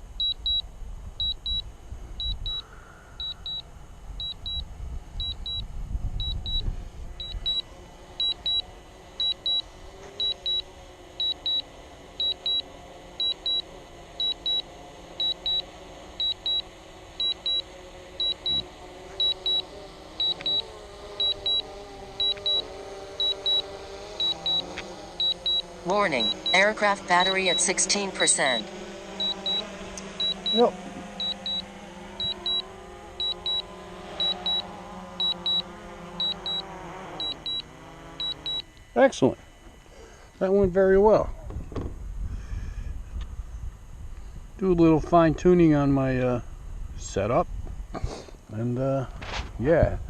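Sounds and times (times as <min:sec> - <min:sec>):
wind rumbling on microphone: 0:00.0 - 0:07.6, 0:40.5 - 0:48.0
drone propeller hum: 0:00.0 - 0:50.0
remote controller beeping in pairs: 0:00.2 - 0:00.6, 0:01.2 - 0:01.6, 0:02.2 - 0:02.6, 0:03.2 - 0:04.6, 0:05.2 - 0:28.6, 0:29.2 - 0:38.8.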